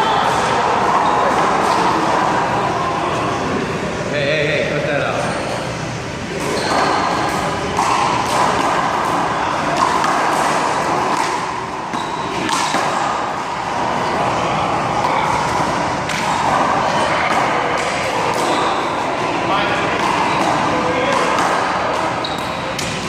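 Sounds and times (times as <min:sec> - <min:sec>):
ball slapping against wall: 0:09.7 - 0:13.1.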